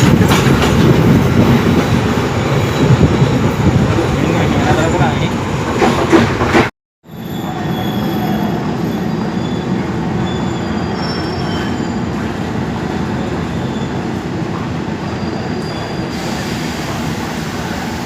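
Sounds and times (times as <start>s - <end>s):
train wheels rumbling on rails: 0.0s - 6.7s
faint high-pitched wheel squeals: 7.2s - 12.1s, 15.1s - 16.1s.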